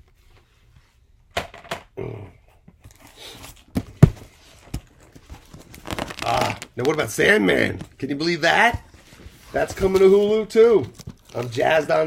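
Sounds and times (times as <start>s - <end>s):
rustling: 2.9s - 12.0s.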